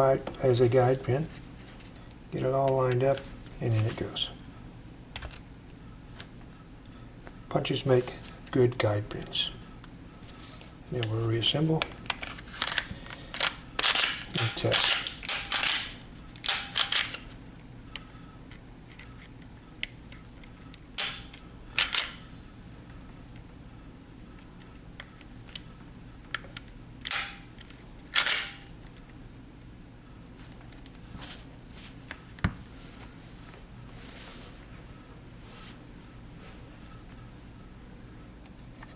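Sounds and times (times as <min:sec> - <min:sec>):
pistol metallic clicks and snaps: 0:13.4 - 0:17.2, 0:27.0 - 0:27.5, 0:28.1 - 0:28.7.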